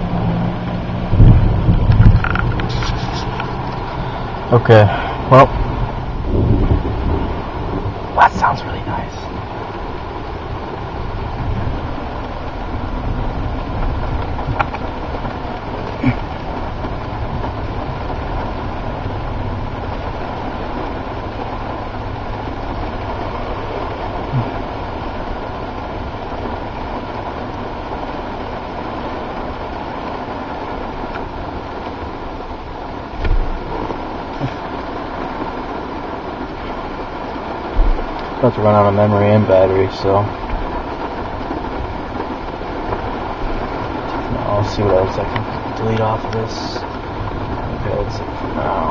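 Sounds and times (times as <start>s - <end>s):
low rumble: 0.0s - 27.7s
rain: 0.0s - 48.9s
wind: 0.0s - 48.9s.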